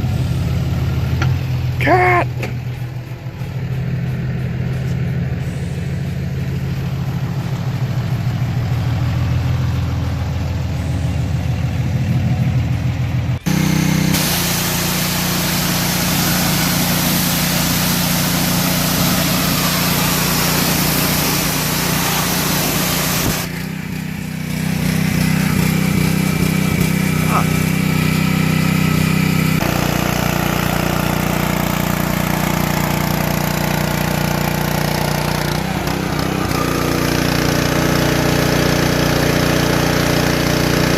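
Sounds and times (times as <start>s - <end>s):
engine running steadily: 0.0s - 40.9s
pressure washer water spray hiss: 13.4s - 40.9s.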